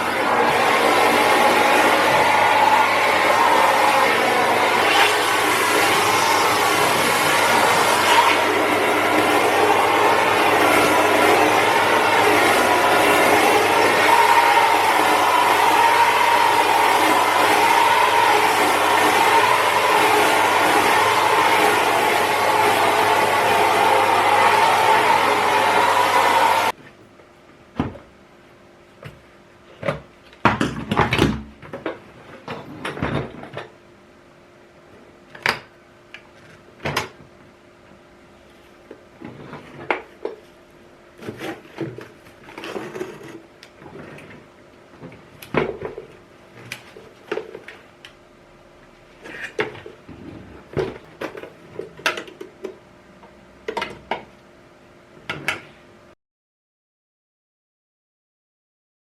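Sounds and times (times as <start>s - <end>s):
vacuum cleaner motor: 0.0s - 26.8s.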